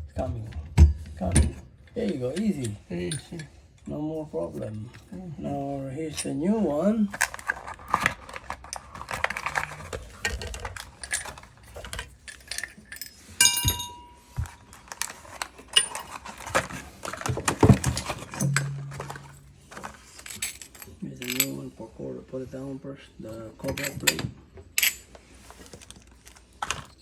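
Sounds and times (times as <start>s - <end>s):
metal tools clinking and rattling: 0.1s - 3.7s, 6.0s - 21.7s, 23.2s - 25.2s
ringing metal clink: 13.0s - 14.3s, 18.4s - 19.7s.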